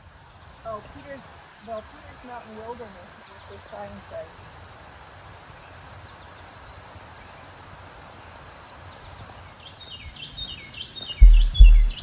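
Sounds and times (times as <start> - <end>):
bird chirping: 10.2 - 12.0.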